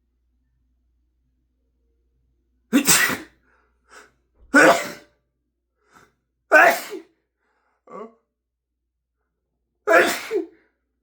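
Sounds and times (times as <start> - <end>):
man sneezing: 2.7 - 3.4, 4.5 - 5.1, 6.5 - 7.1, 9.9 - 10.6.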